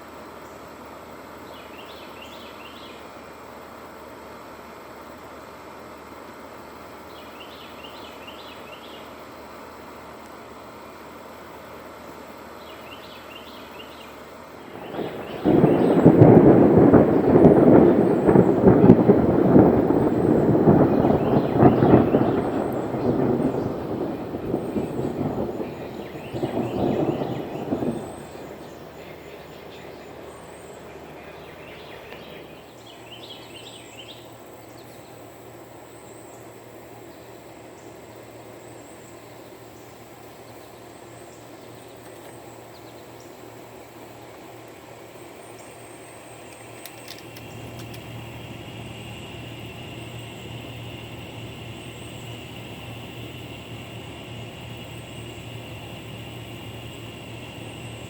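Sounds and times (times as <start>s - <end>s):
cicadas buzzing: 0.0s - 58.0s
high insect trill: 6.0s - 58.0s
low steady rumble: 14.2s - 33.8s, 42.4s - 58.0s.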